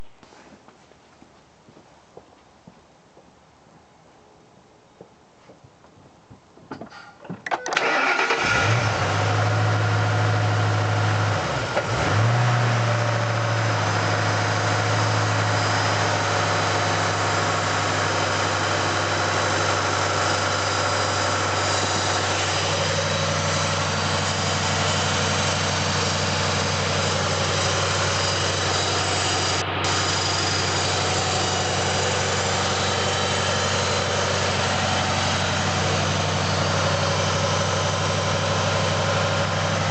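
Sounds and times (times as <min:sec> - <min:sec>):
engine cranking and starting: 0:07.4 - 0:09.8, 0:15.2 - 0:38.9
failing water pump noise: 0:07.7 - 0:08.5
car engine idling: 0:07.8 - 0:39.9.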